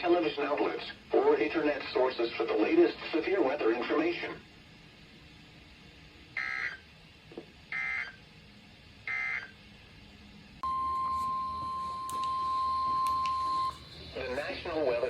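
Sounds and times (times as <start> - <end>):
steady alarm tone: 6.4 - 6.8, 7.7 - 8.2, 9.0 - 9.6, 10.6 - 14.5.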